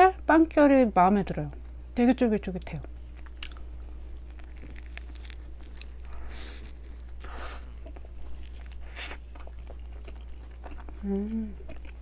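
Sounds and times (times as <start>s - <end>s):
steady low hum: 0.0s - 12.0s
chewing with wet mouth clicks: 2.6s - 12.0s.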